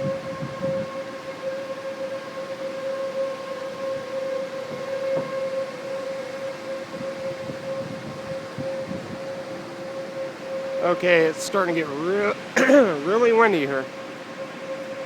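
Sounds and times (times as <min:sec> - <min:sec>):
wind noise: 0:00.0 - 0:01.0, 0:06.8 - 0:09.6
steady warning siren: 0:00.0 - 0:15.0.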